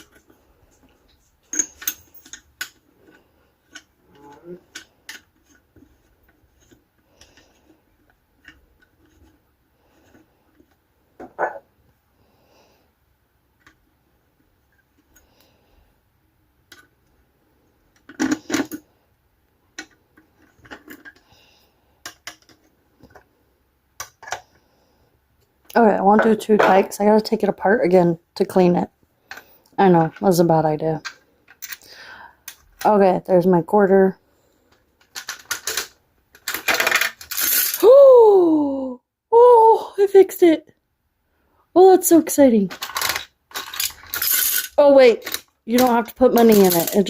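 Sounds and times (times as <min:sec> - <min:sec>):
parts clattering: 0:00.0 - 0:11.6, 0:34.7 - 0:37.8, 0:42.7 - 0:47.0
machine parts clicking and clinking: 0:42.7 - 0:47.0.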